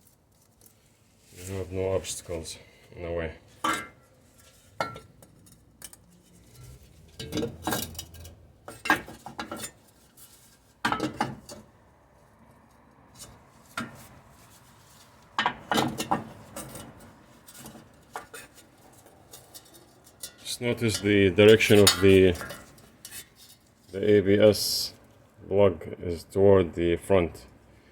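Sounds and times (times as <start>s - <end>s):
metal tools clinking: 15.8s - 24.0s.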